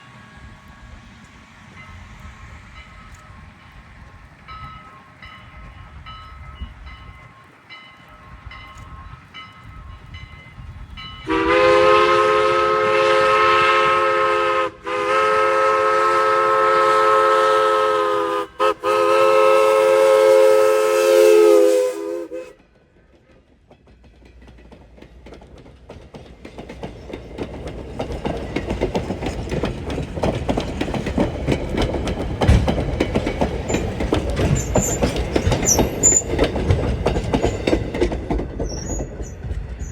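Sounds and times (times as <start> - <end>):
train rumble and wheel clatter: 0.0 - 39.9
steam locomotive chime whistle: 4.5 - 22.6, 34.5 - 36.4.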